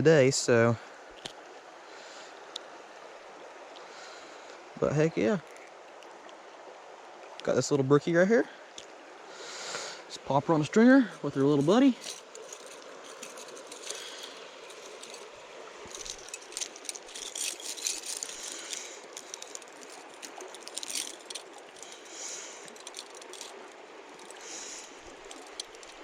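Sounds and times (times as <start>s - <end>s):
creek rushing: 0.0s - 26.0s
stringer rattling and clicking: 11.4s - 26.0s.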